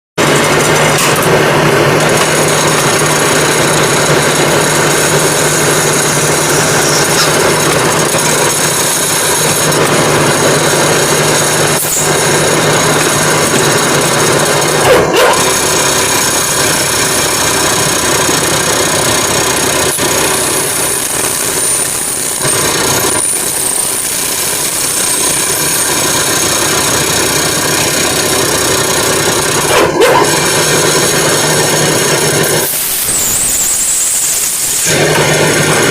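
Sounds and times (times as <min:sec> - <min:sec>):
lathe running: 0:00.2 - 0:35.9.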